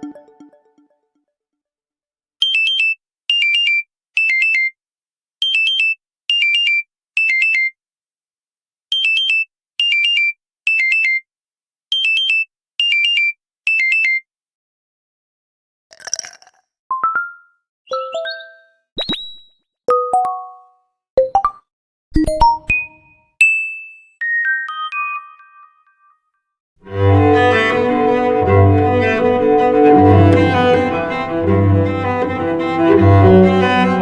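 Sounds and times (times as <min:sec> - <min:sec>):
rising three-note chime: 0:00.0 - 0:00.8.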